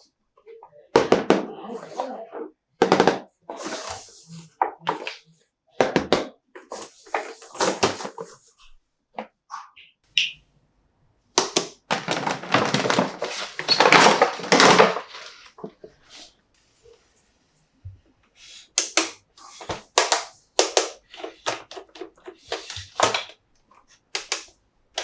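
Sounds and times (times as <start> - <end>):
plastic toy parts clicking: 18.8 - 19.2, 24.1 - 25.0.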